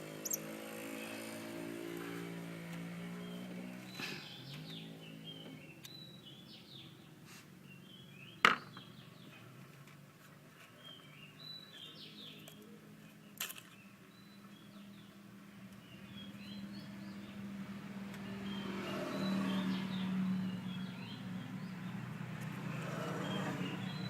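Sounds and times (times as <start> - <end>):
bird chirping: 0.0 - 1.6, 18.2 - 22.0, 23.1 - 24.0.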